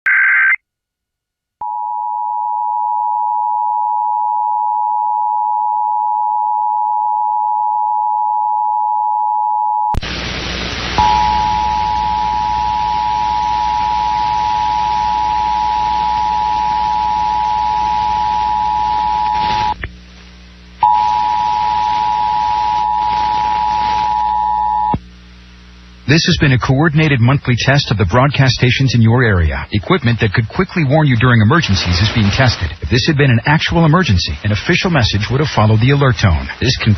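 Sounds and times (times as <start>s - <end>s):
low hum: 10.0s - 36.7s.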